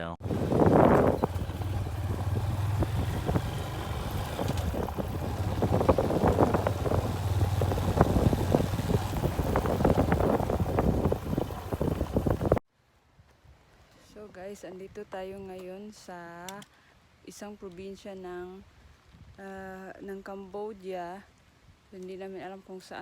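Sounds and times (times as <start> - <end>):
motorcycle engine hum: 0.0 - 12.6
small knocks and rattles: 0.2 - 12.6
wind buffeting microphone: 0.2 - 12.6.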